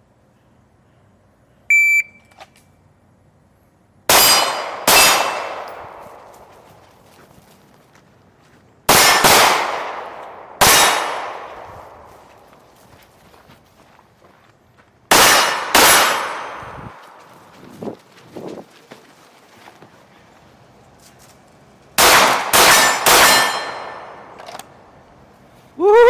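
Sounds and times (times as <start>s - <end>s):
shot timer beep: 1.7s - 2.3s
pistol shots: 4.1s - 6.3s, 8.9s - 12.0s, 15.1s - 17.0s, 22.0s - 24.4s.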